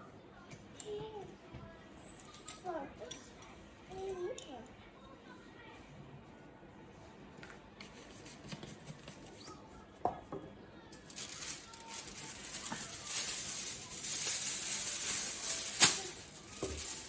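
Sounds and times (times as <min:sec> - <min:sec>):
aluminium foil crackling: 0:10.9 - 0:17.0.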